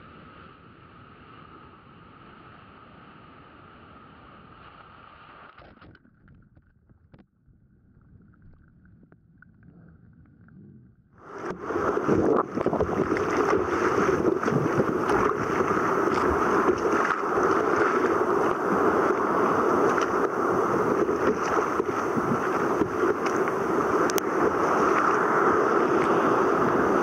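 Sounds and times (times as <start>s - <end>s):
wind buffeting microphone: 10.6s - 27.0s
sea water rushing: 11.2s - 27.0s
wind rushing: 11.3s - 27.0s.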